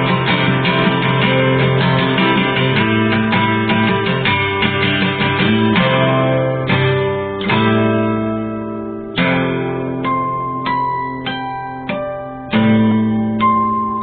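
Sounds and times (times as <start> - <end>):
acoustic guitar music: 0.0 - 14.0.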